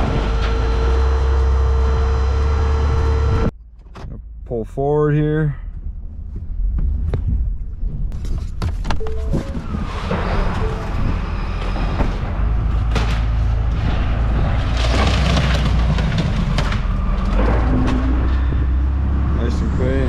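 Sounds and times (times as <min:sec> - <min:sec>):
truck engine running: 0:00.0 - 0:03.6, 0:09.0 - 0:20.0
knocks and clatter: 0:05.7 - 0:19.4
rushing scraping noise: 0:08.1 - 0:20.0.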